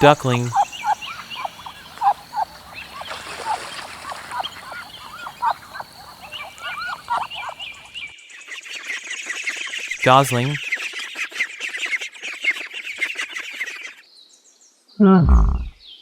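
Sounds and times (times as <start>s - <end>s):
ducklings peeping: 0.0s - 8.1s.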